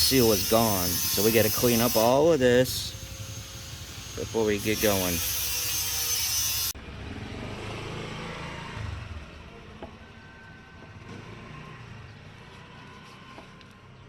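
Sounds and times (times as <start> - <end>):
loud hiss: 0.0 - 5.9.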